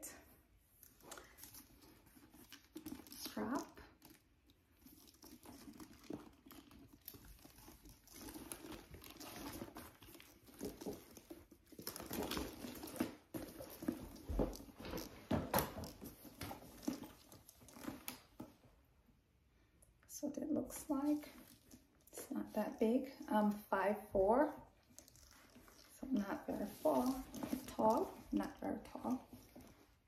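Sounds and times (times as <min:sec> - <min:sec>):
leather handbag rustling and knocking: 0:08.1 - 0:18.6.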